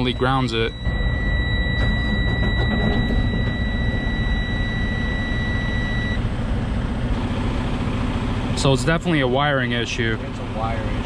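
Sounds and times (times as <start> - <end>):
high-pitched warning tone: 0.0 - 6.2
diesel truck engine idling: 0.0 - 11.0.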